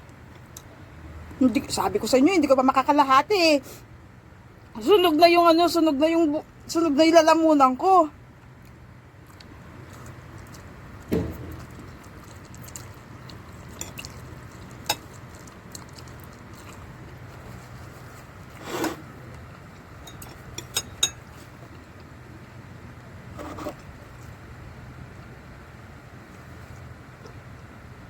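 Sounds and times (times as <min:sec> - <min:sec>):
faint low hum: 0:00.0 - 0:28.0
utensils clinking on a dish: 0:20.0 - 0:21.3.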